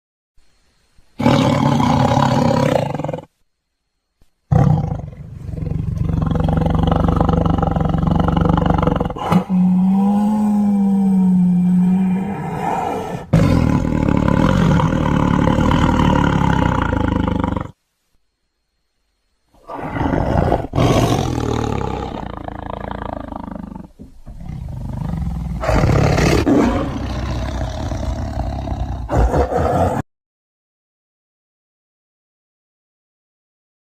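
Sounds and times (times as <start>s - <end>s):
tiger rumbling calls: 4.5s - 17.8s, 19.6s - 30.0s.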